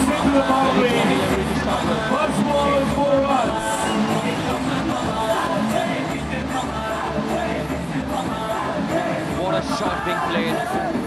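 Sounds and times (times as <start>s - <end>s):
faint voices: 0.0s - 11.0s
music playing: 0.0s - 11.0s.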